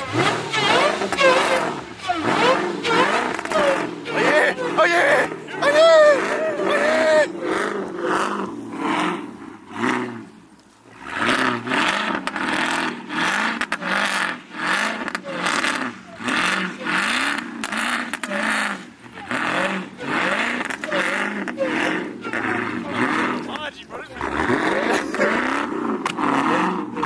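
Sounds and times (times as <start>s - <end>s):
car engine revving: 0.0s - 27.0s.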